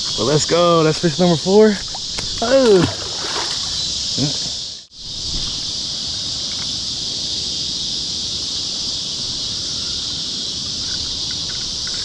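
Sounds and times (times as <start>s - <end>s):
insects buzzing: 0.0s - 12.0s.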